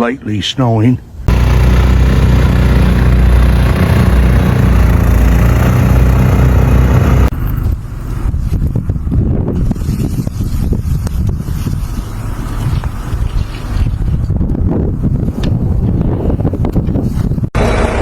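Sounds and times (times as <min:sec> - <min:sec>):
motor vehicle rumbling: 0:01.2 - 0:18.0
rough rushing noise: 0:01.2 - 0:18.0.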